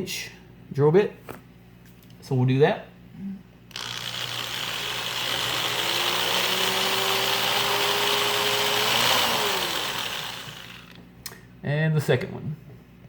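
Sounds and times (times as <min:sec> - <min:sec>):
electric drill boring a hole: 0:03.7 - 0:11.0.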